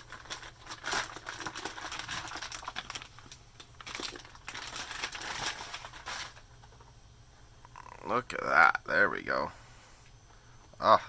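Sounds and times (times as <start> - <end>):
packaging crinkling and rustling: 0.0 - 6.8.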